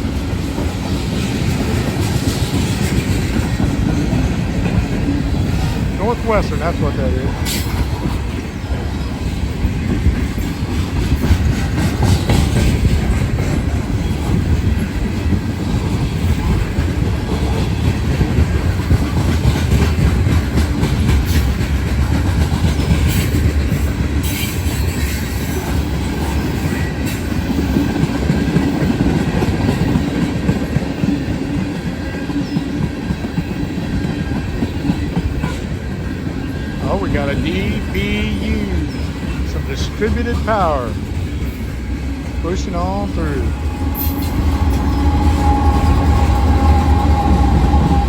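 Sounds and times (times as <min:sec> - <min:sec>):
train wheels rumbling on rail: 0:00.0 - 0:48.0.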